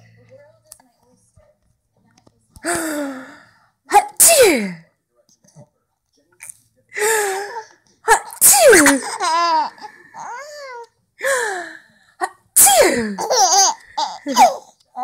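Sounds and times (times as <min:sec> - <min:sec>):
woman sneezing loudly: 0:03.9 - 0:04.8, 0:08.1 - 0:09.2, 0:12.6 - 0:13.3, 0:14.3 - 0:14.6.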